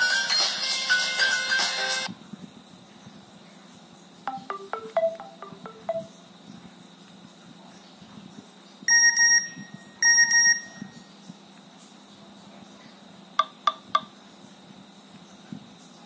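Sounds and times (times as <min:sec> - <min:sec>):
phone electronic alert tone: 0:04.3 - 0:06.1, 0:08.9 - 0:10.9.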